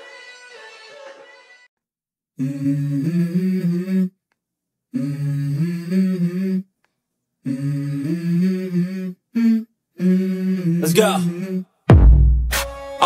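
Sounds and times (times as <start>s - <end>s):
person humming a melody: 2.4s - 4.2s, 4.9s - 6.7s, 7.4s - 11.7s.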